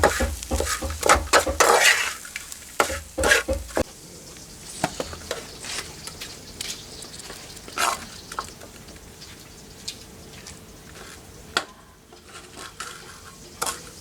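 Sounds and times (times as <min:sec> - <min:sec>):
loud knock: 0:00.0 - 0:01.7, 0:02.9 - 0:03.8
utensil clinking against pan: 0:00.0 - 0:01.9, 0:02.8 - 0:03.8
food sizzling in a pan: 0:00.0 - 0:11.5, 0:12.2 - 0:14.0.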